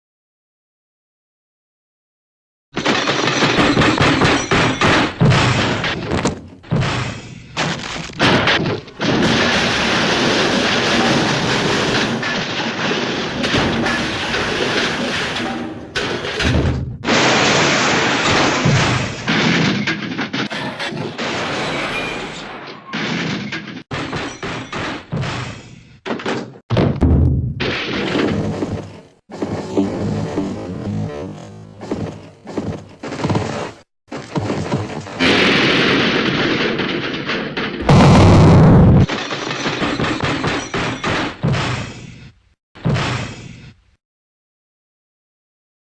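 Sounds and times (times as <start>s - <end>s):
junk clattering and crashing: 2.8s - 29.7s, 34.1s - 42.0s
cartoon crash sound effect: 37.8s - 39.1s
steady crashing noise: 37.8s - 39.1s.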